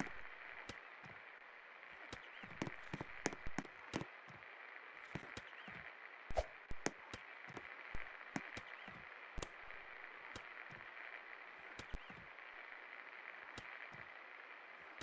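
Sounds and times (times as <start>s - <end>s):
clicks and taps: 0.0s - 0.8s, 2.1s - 4.4s, 5.2s - 5.5s, 6.3s - 9.6s.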